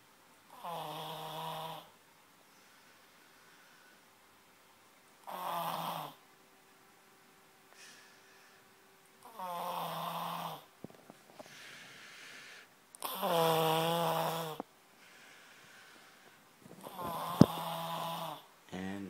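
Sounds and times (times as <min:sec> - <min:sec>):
loud snoring: 0:00.5 - 0:01.9, 0:05.3 - 0:06.2, 0:09.2 - 0:10.7, 0:13.0 - 0:14.6, 0:16.8 - 0:19.0
breathy exhales: 0:07.7 - 0:08.7.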